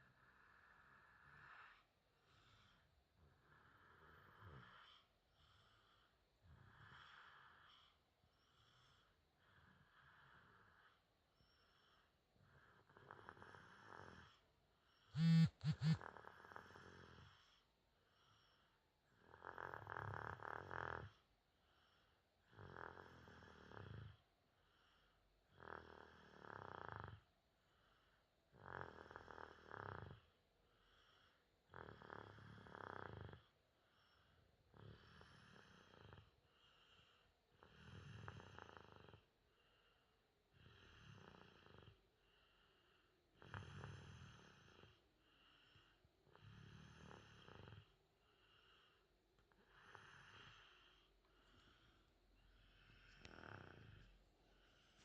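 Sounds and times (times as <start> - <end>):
quiet breaths: 0.0 - 55.0
person snoring: 15.2 - 17.4, 28.6 - 30.3, 43.4 - 52.0, 52.6 - 54.8
loud raspy snoring: 28.6 - 30.3, 31.7 - 33.5, 43.4 - 45.0, 46.3 - 47.9, 53.2 - 54.0.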